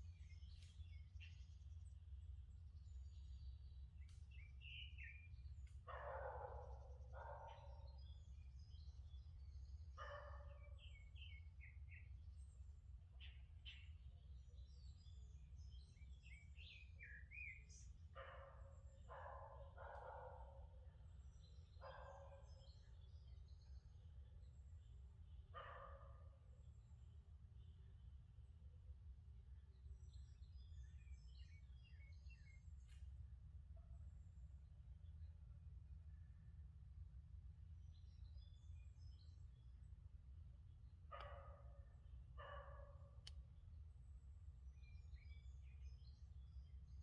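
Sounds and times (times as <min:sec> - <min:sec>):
songbirds chirping and singing: 0:00.0 - 0:47.0
dog barking: 0:05.9 - 0:07.9, 0:10.0 - 0:10.6, 0:18.2 - 0:20.8, 0:21.8 - 0:22.6, 0:25.6 - 0:26.2, 0:41.1 - 0:43.2.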